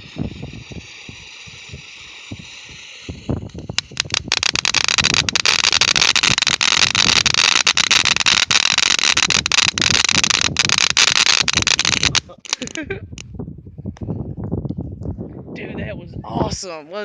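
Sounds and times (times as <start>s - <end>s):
firework hissing and crackling: 0.0s - 13.2s.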